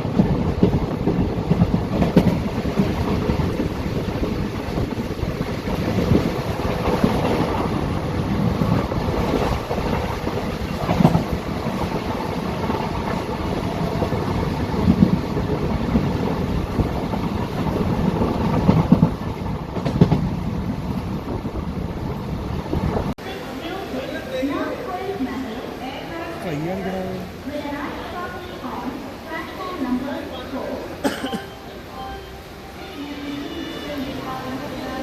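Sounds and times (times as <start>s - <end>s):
rail clack: 0.0s - 23.1s
train wheels rumbling on track: 0.0s - 26.5s.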